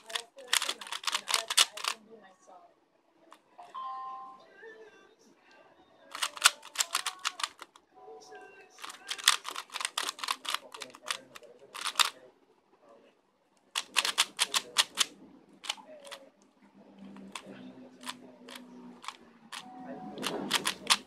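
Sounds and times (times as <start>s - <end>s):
puzzle cube clicking: 0.0s - 2.0s, 6.1s - 7.8s, 8.8s - 12.1s, 13.8s - 16.2s, 17.2s - 21.0s.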